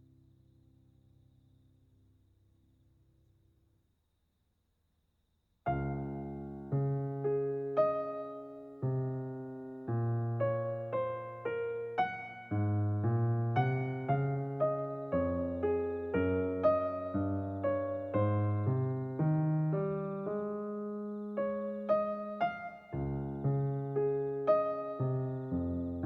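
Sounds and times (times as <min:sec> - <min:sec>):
calm piano music: 0:00.0 - 0:02.0, 0:05.7 - 0:26.0.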